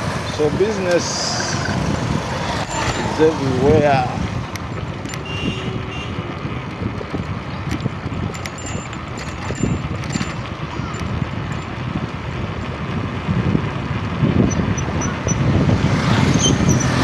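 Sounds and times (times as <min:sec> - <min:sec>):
vehicle road noise: 0:00.0 - 0:17.0
wind on microphone: 0:00.1 - 0:17.0
light clicks or rattles: 0:04.4 - 0:05.6, 0:06.4 - 0:12.0.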